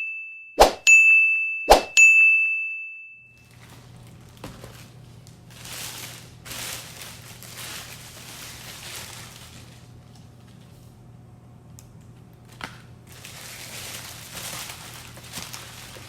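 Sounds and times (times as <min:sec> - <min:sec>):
rustling crinkling: 0:03.4 - 0:10.9, 0:12.5 - 0:16.0.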